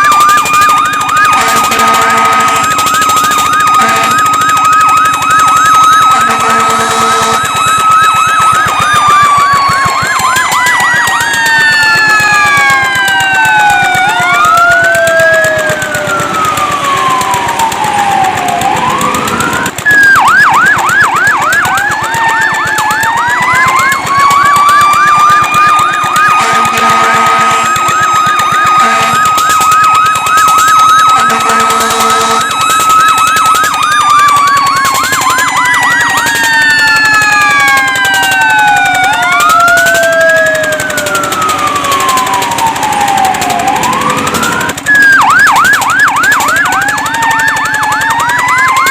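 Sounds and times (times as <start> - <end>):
fire truck sirens: 0.0 - 48.9
deep horn blasts: 1.4 - 2.7, 6.2 - 7.4, 26.4 - 27.8, 28.8 - 29.3, 31.2 - 32.5.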